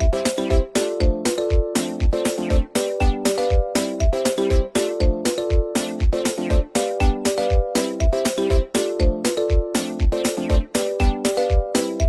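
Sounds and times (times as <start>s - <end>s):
kick drum beat: 0.0s - 12.0s.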